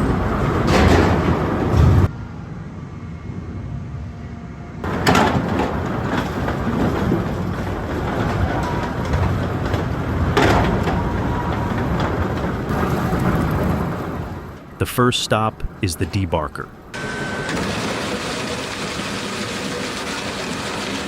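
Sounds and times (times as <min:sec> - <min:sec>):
heavy clanks: 0:04.8 - 0:13.8
sawmill machinery rumble and clatter: 0:04.8 - 0:14.8, 0:17.0 - 0:21.0.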